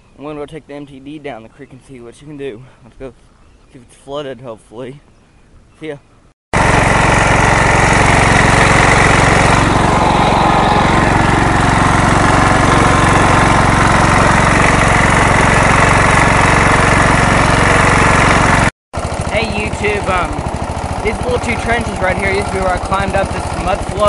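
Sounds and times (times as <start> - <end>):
riding lawn mower engine running: 6.6 - 24.0.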